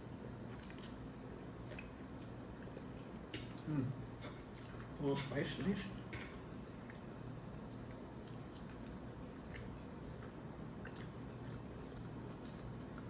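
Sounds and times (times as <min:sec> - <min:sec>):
steady low hum: 0:00.0 - 0:13.0
person chewing spaghetti: 0:00.4 - 0:01.1, 0:07.8 - 0:13.0.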